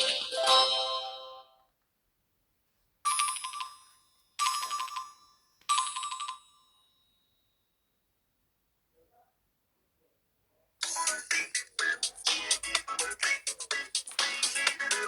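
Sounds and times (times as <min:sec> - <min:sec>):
mobile phone ringtone: 0:00.0 - 0:01.5, 0:03.1 - 0:07.2.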